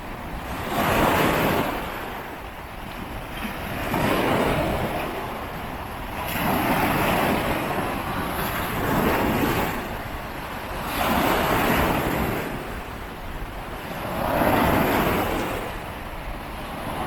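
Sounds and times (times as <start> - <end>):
ocean waves rolling in: 0.0 - 17.0
wind rumble on microphone: 0.0 - 17.0.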